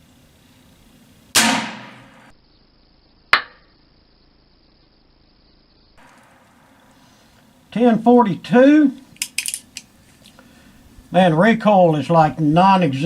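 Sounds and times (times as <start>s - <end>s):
revolver shots: 1.3s - 2.3s.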